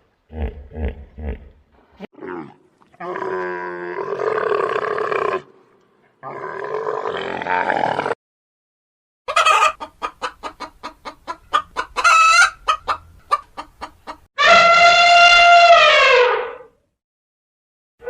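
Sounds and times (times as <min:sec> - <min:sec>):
chicken clucking: 0:09.3 - 0:14.3
chicken squawk: 0:09.3 - 0:16.6.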